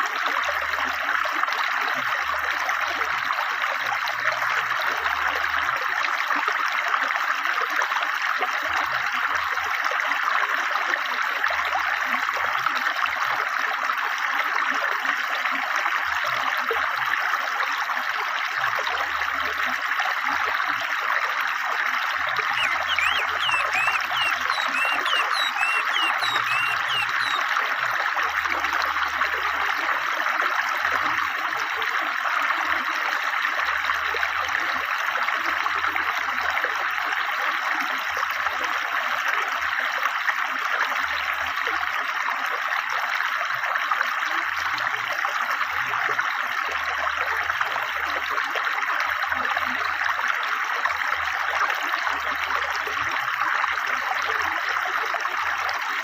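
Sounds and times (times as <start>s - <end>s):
bird chirps: 22.6s - 27.4s.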